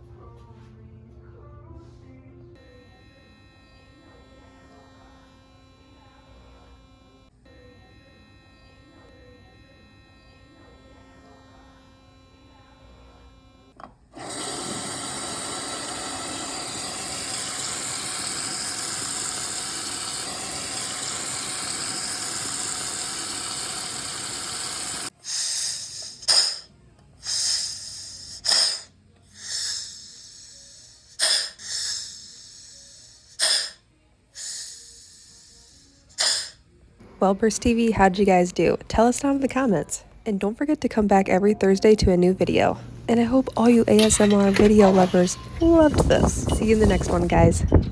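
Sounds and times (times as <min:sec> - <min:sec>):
dental drill whining: 0:14.2 - 0:33.8, 0:34.4 - 0:36.6, 0:42.4 - 0:47.6.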